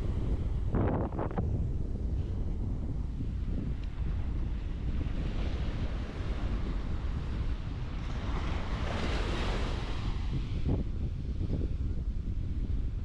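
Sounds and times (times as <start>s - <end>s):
wave breaking and washing in: 0.0s - 13.0s
wind buffeting microphone: 0.0s - 13.0s.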